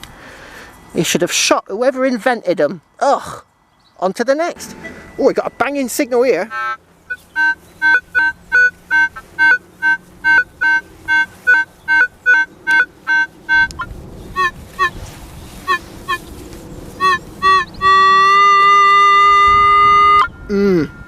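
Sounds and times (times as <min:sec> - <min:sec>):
dull background noise: 0:00.0 - 0:21.0
metal detector long steady tone: 0:04.6 - 0:15.0, 0:17.0 - 0:21.0
metal detector two-tone beeps: 0:07.4 - 0:14.9.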